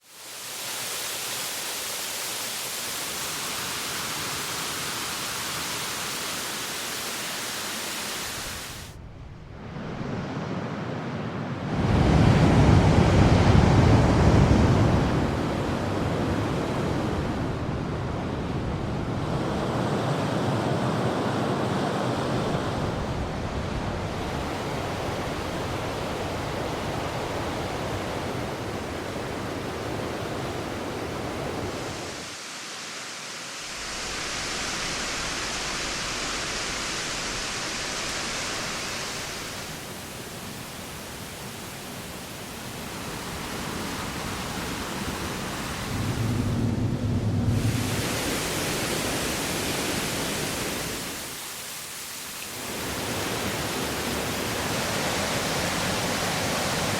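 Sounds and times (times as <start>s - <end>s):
waterfall rushing: 0.1s - 9.0s, 24.0s - 56.9s.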